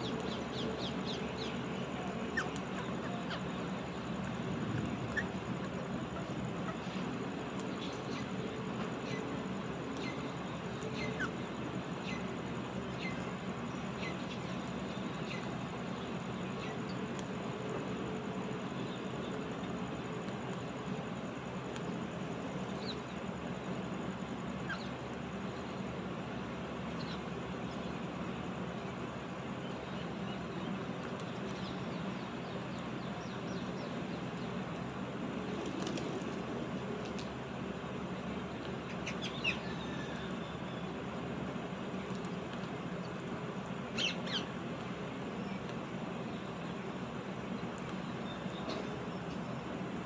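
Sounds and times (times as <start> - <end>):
steady background hiss: 0.0 - 50.0
steady background noise: 0.0 - 50.0.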